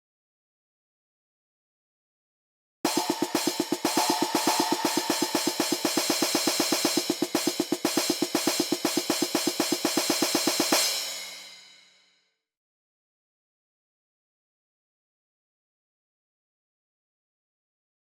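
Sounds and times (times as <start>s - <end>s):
snare drum roll: 2.9s - 11.8s
cymbals: 2.9s - 12.0s.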